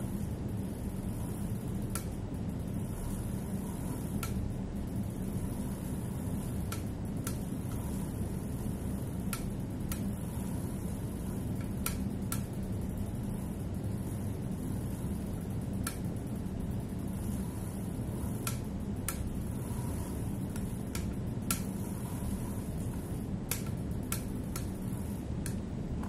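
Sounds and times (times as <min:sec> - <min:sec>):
bicycle drivetrain clicks: 0:00.0 - 0:26.0
steady low rumble: 0:00.0 - 0:26.0.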